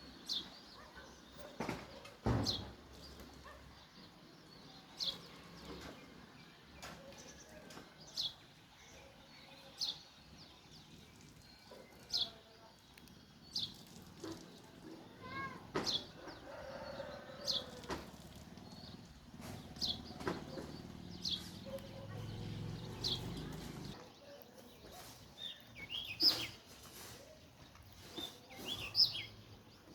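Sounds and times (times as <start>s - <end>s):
sparrow chirping: 18.4s - 24.0s, 24.6s - 29.9s.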